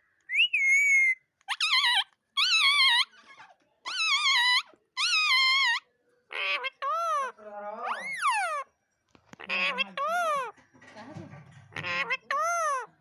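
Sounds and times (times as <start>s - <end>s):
parrot high-pitched calls: 0.3s - 3.2s, 3.9s - 8.7s, 9.4s - 10.5s, 11.7s - 12.9s.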